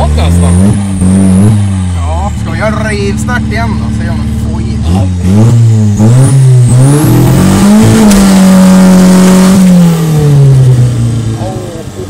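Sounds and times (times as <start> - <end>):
car engine accelerating hard: 0.0 - 12.0.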